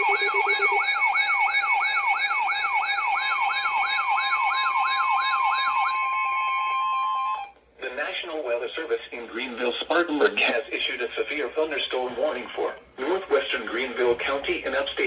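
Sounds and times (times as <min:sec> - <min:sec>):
electronic alert tone sweeps: 0:00.0 - 0:01.0
steady electronic tone: 0:00.0 - 0:01.0
steady high tones: 0:00.0 - 0:01.6.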